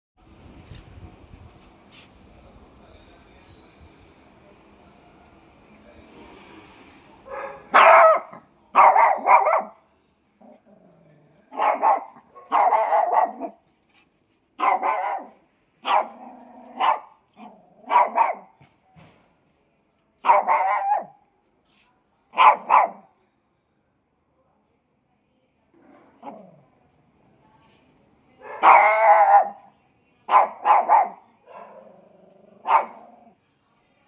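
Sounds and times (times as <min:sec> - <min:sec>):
puppies barking: 0:07.3 - 0:09.8, 0:11.5 - 0:13.6, 0:14.6 - 0:15.3, 0:20.3 - 0:21.0, 0:28.5 - 0:29.6, 0:30.3 - 0:31.8, 0:32.6 - 0:33.1.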